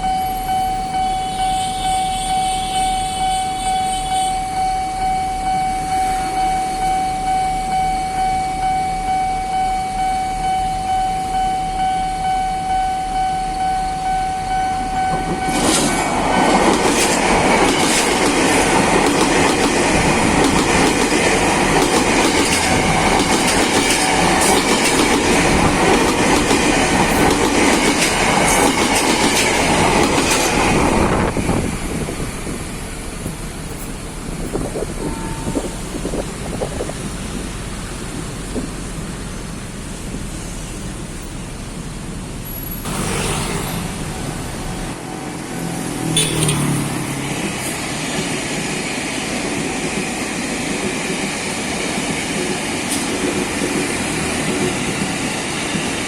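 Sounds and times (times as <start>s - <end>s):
train wheels clattering: 15.2s - 31.0s.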